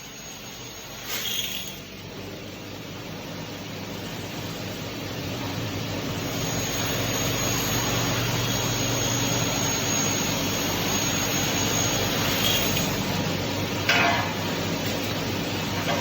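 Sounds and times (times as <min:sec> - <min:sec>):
cutting saw running with high whine: 0:00.0 - 0:02.1, 0:03.7 - 0:13.8.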